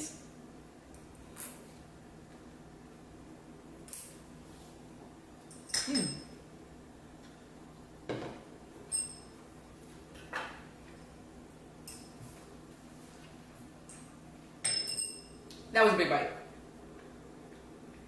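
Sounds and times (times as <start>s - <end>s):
metal chopsticks clinking: 5.5s - 6.3s.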